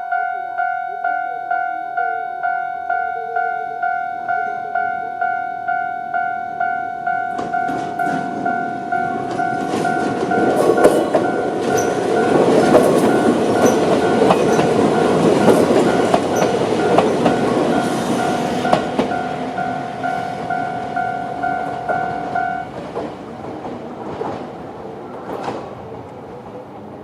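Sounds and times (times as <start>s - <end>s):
crossing warning bell ringing: 0.0s - 23.1s
electric train rumbling: 0.1s - 27.0s
wheels clicking over rail joints: 7.3s - 26.2s.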